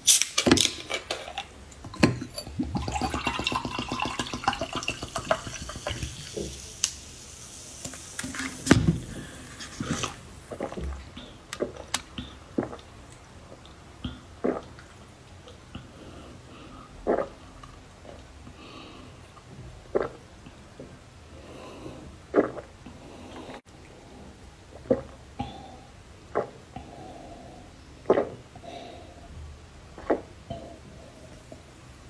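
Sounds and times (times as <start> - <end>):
juice gurgling and slurping: 0.1 - 13.0, 22.3 - 23.6.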